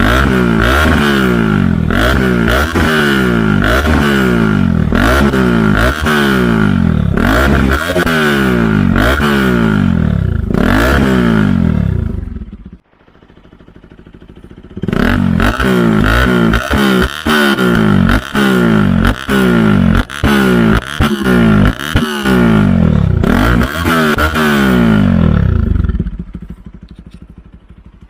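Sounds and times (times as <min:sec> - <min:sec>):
motorcycle engine revving: 0:00.0 - 0:28.0.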